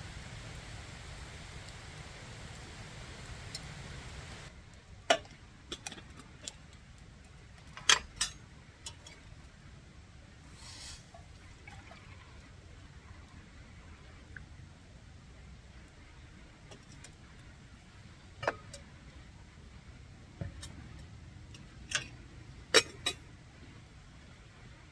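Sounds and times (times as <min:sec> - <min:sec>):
steady hiss: 0:00.0 - 0:05.0, 0:10.3 - 0:24.9
soft rustle: 0:10.4 - 0:12.3.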